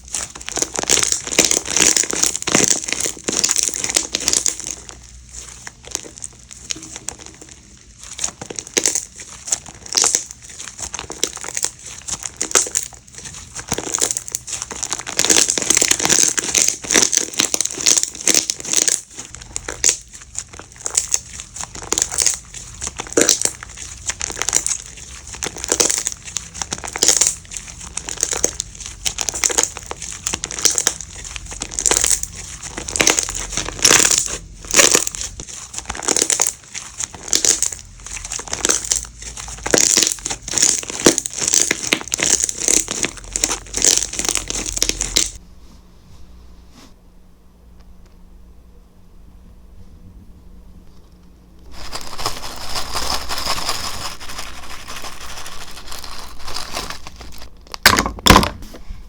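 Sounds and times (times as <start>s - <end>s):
slime squished by hand: 0.0s - 45.4s.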